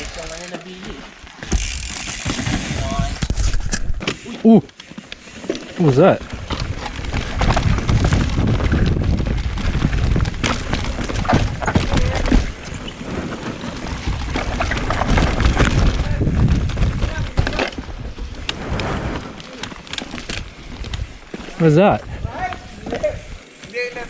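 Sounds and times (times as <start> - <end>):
bike rattling and knocking: 0.0 - 24.0
tyre noise on dirt: 0.0 - 24.0
wind rumbling on microphone: 6.2 - 19.4, 20.0 - 21.3, 22.0 - 23.5.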